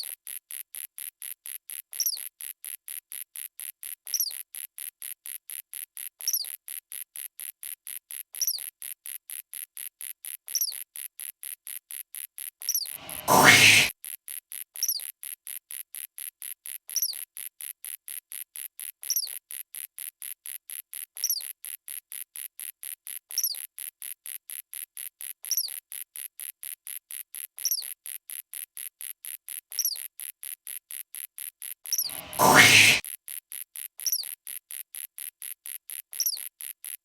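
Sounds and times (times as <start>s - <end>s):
short loud noisy burst: 13.0s - 13.9s, 32.1s - 33.0s.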